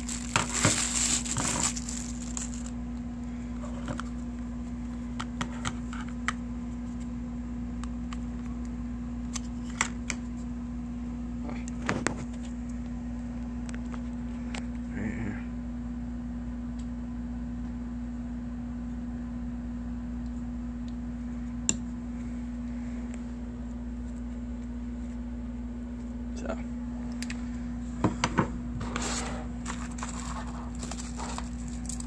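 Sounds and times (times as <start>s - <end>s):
packaging crinkling: 0.0s - 2.8s, 29.0s - 32.0s
steady hum: 0.0s - 32.0s.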